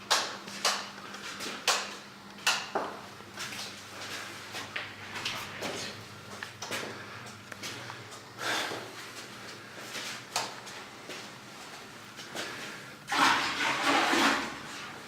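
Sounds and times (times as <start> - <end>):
toilet flushing: 13.0 - 15.0.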